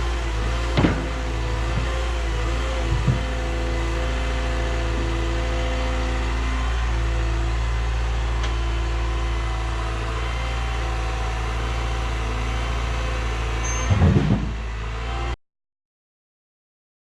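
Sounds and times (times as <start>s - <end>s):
excavator diesel engine running: 0.0s - 15.4s
loud knocks: 0.7s - 2.1s, 2.8s - 3.6s, 13.9s - 14.6s.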